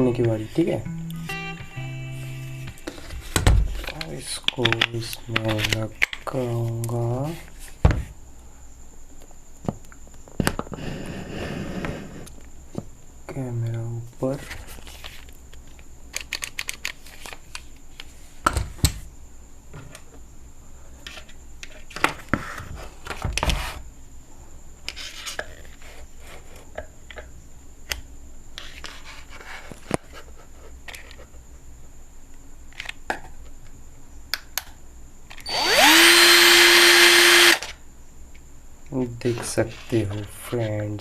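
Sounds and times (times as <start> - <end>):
cordless drill motor whining: 35.4 - 37.7.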